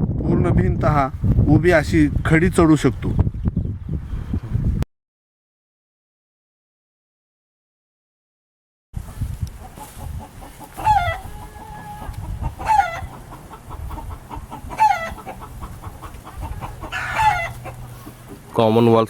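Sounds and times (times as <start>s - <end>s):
hen clucking: 9.0s - 18.9s.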